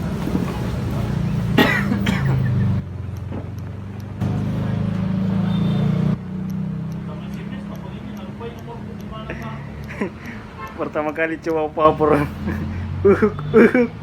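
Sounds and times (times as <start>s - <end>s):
person coughing: 1.6s - 2.6s, 13.1s - 14.0s.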